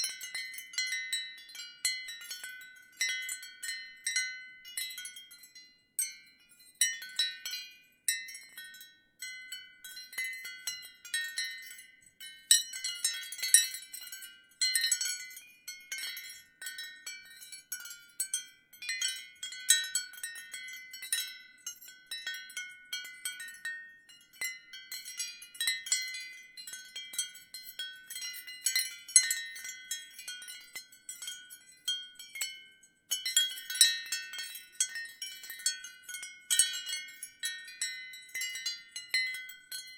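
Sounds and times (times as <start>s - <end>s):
ceramic wind chime clinking: 0.0s - 39.9s.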